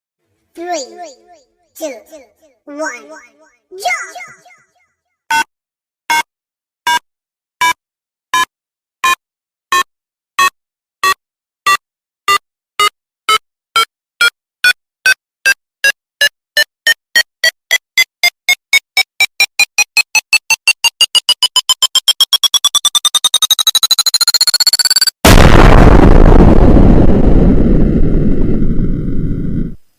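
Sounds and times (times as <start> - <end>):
electronic countdown beeps: 8.4 - 25.2.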